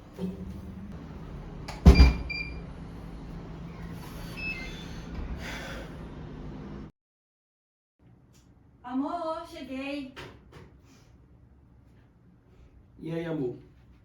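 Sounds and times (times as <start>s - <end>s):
steady low hum: 0.0s - 6.9s.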